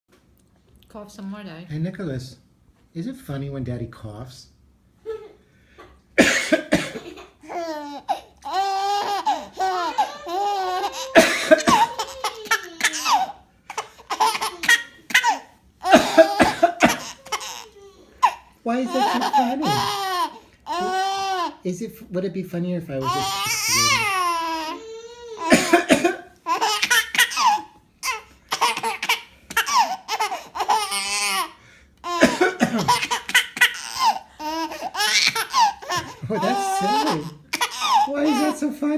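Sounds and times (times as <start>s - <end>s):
man coughing: 6.2s - 7.3s, 11.1s - 12.0s, 15.9s - 17.2s, 19.2s - 20.0s, 25.4s - 26.3s, 32.2s - 33.3s, 36.0s - 37.3s
baby laughing: 7.0s - 21.6s, 23.0s - 38.7s.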